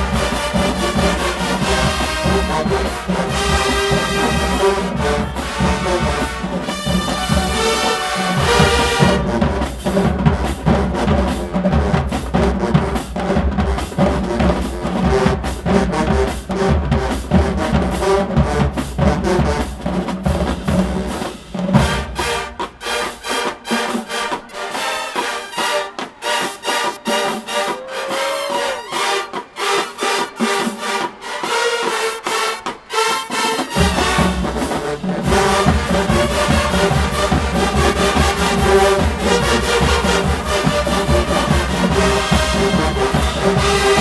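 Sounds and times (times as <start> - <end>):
brass horns: 0.0 - 44.0
marching drums: 0.0 - 44.0.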